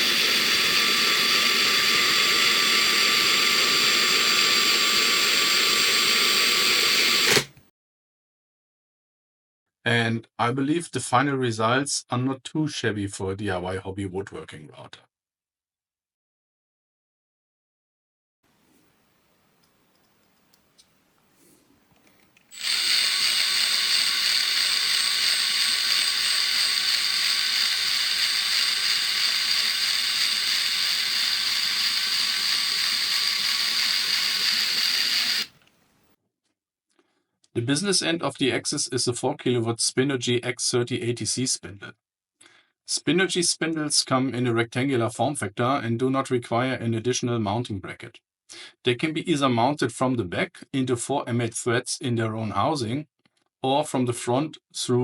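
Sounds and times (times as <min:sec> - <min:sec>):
machine hissing with high whine: 0:00.0 - 0:07.6, 0:22.5 - 0:35.6.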